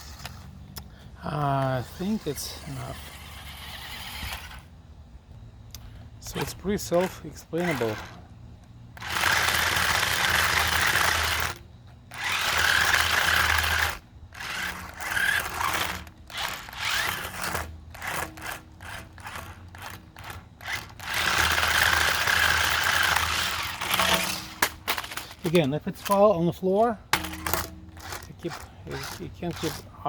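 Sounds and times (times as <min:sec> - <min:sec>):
toy car electric motors whirring: 0:00.0 - 0:04.7, 0:06.2 - 0:26.2, 0:27.1 - 0:30.0.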